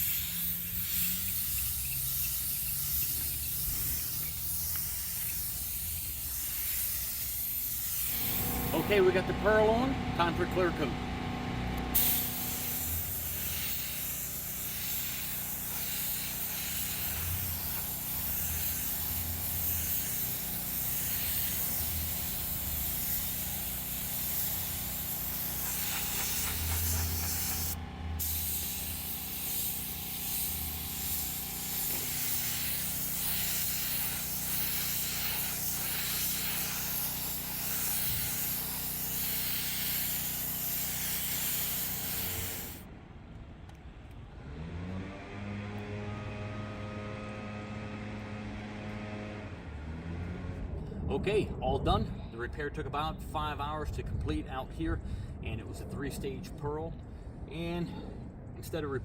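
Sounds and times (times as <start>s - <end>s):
spray gun hissing: 0.0s - 9.1s, 12.0s - 42.8s.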